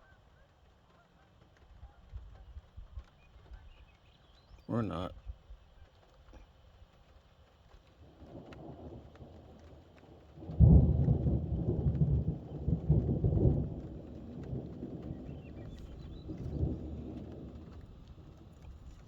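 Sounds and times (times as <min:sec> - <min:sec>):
light rain patter: 0:00.0 - 0:19.0
thunder clap and rumble: 0:08.0 - 0:19.0.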